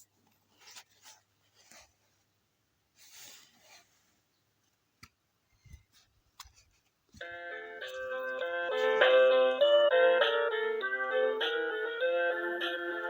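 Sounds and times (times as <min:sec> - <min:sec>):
faint soft rustles: 0:00.0 - 0:04.4, 0:05.5 - 0:07.2
music with steady notes: 0:07.2 - 0:13.0.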